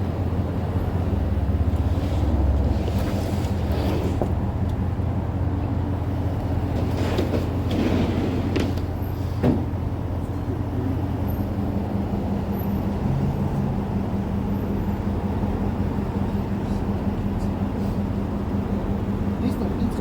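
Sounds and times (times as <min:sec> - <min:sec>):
vehicle engine running: 0:08.3 - 0:20.0.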